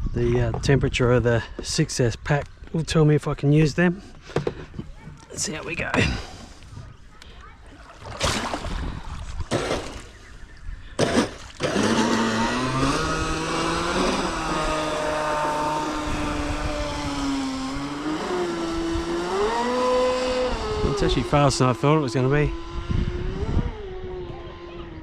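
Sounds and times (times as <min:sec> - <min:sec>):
electric motor whining: 0:11.0 - 0:25.0.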